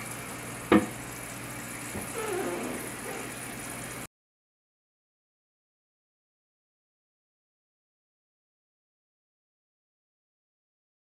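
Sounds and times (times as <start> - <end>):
toilet tank refilling: 0.0 - 4.1
small knock: 0.7 - 0.9.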